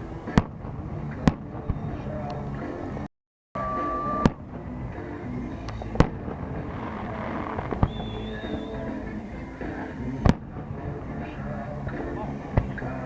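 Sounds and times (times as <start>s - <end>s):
music playing: 0.0s - 13.0s
fireworks bangs: 0.3s - 2.0s, 3.8s - 9.0s, 10.2s - 10.6s
high whistling tone: 3.6s - 4.4s, 7.7s - 9.0s.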